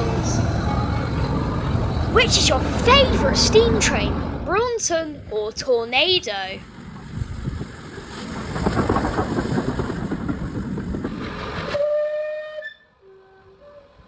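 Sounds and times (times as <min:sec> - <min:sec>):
steam locomotive running: 0:00.0 - 0:14.0
steam whistle blowing: 0:11.8 - 0:14.0.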